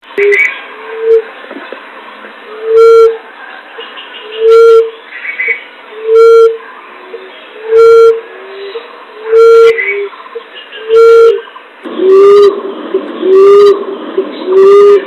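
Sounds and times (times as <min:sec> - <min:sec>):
dove hooting call: 0:03.8 - 0:15.0.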